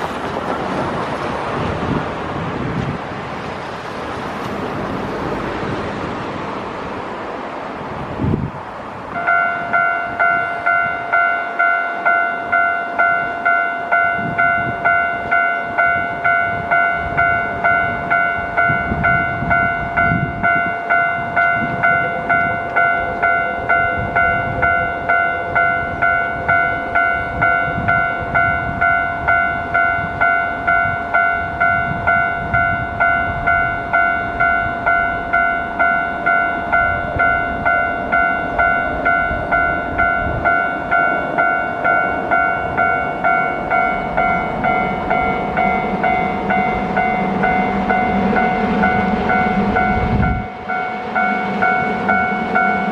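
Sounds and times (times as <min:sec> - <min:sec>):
train rumble: 0:00.0 - 0:52.9
level crossing warning bell: 0:09.1 - 0:52.9.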